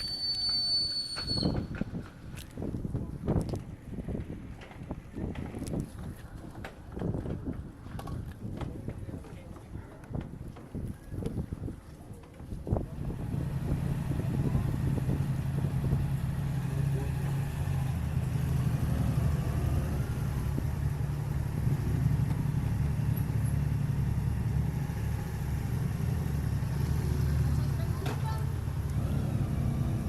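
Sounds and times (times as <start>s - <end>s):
vehicle engine humming: 12.8s - 30.0s.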